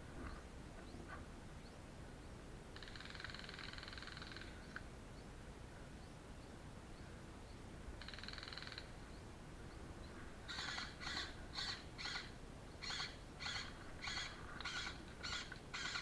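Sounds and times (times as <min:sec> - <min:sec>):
bird harsh calls: 0:08.0 - 0:09.2, 0:10.0 - 0:16.0.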